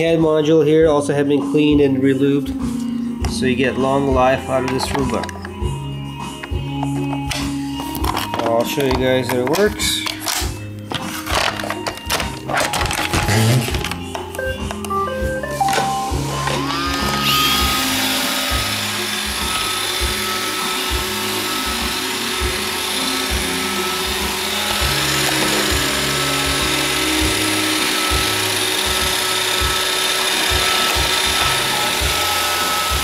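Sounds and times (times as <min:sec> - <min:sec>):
robot vacuum motor whine: 0:15.5 - 0:33.0.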